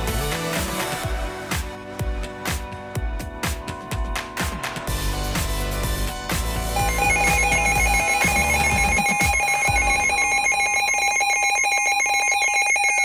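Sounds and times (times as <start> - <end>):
warbling two-tone alarm beep: 6.7 - 13.0.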